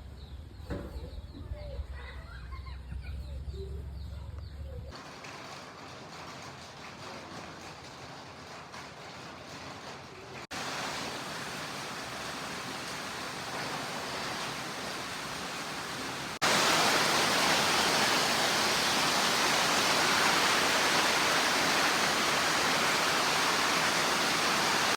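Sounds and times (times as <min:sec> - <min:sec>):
heavy rain pouring: 0:05.0 - 0:24.9.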